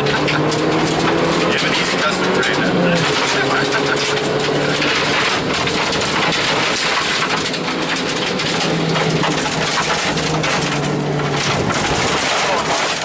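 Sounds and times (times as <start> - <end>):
rally car engine running hard: 0.0 - 13.0
stones cracking against underbody: 2.7 - 13.0.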